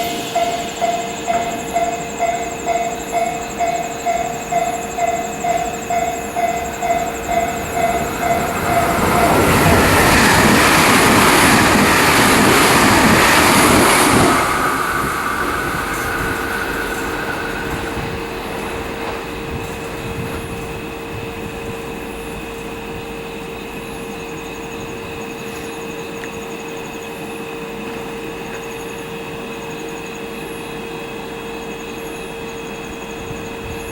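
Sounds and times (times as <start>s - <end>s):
warning bell dinging: 0.0s - 10.0s
train wheel and air rush: 0.0s - 33.9s.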